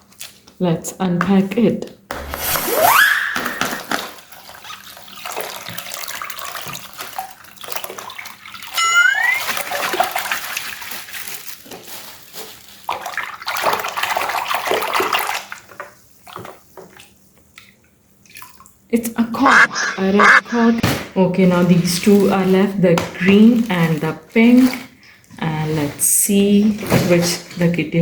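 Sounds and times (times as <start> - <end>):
short rising squeak: 8.8 - 9.6
slime squelching: 19.4 - 20.8.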